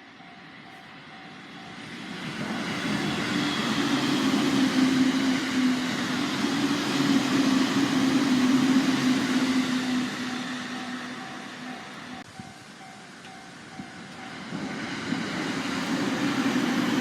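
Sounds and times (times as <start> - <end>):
crossing warning bell ringing: 0.0 - 4.5, 8.4 - 14.6
train passing close by: 0.0 - 17.0.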